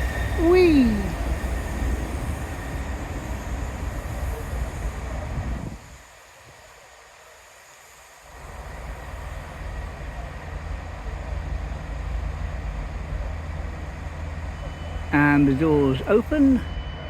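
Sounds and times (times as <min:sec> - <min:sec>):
diesel train engines rumbling: 0:00.0 - 0:17.0.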